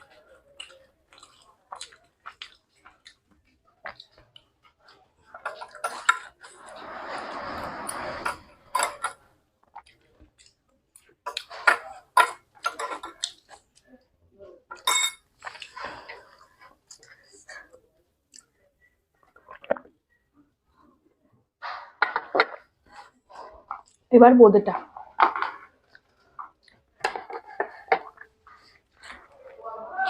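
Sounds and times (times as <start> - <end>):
chewing: 0.0 - 6.8, 9.6 - 12.0, 12.7 - 13.9, 15.4 - 20.9, 22.4 - 24.1, 24.9 - 29.7.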